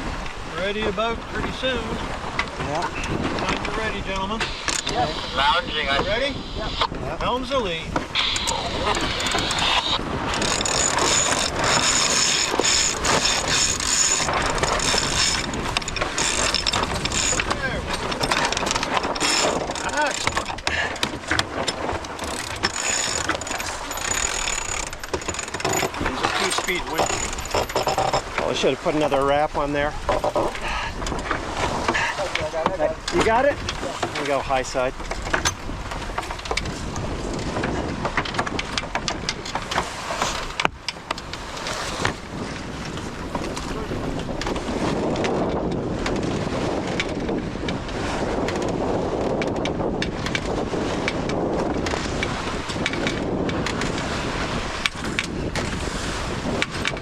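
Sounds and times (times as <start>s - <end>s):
rushing water: 0.0s - 49.4s
rushing wind: 0.0s - 57.0s
winch clicking: 8.2s - 29.2s.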